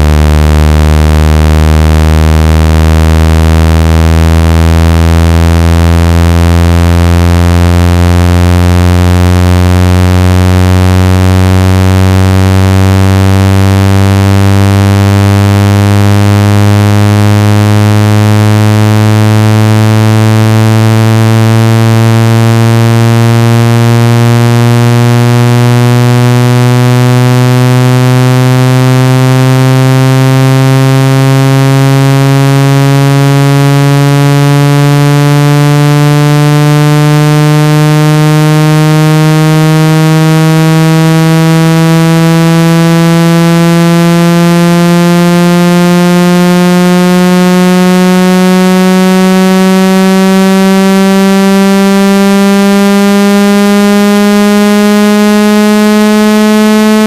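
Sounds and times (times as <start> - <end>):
buzzy tone gliding upward: 17.8 - 51.6.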